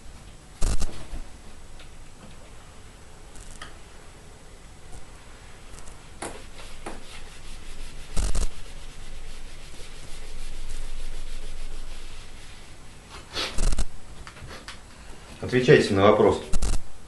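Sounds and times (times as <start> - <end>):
rubbing and scraping: 6.3 - 12.8.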